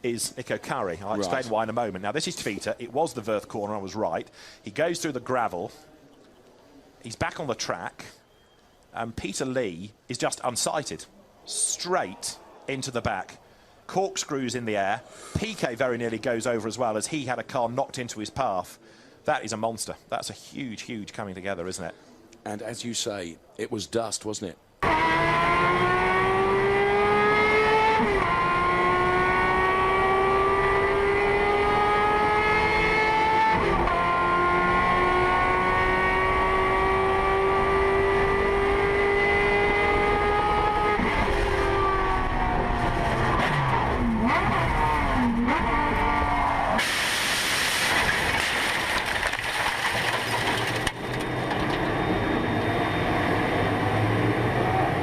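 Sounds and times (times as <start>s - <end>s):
racing car engine accelerating: 24.8s - 48.8s, 49.9s - 55.0s.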